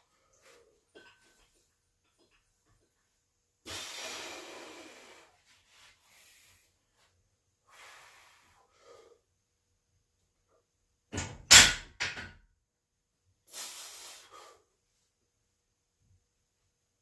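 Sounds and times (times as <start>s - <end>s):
forceful hissing exhale: 3.7s - 5.4s, 7.7s - 9.0s, 13.5s - 14.6s.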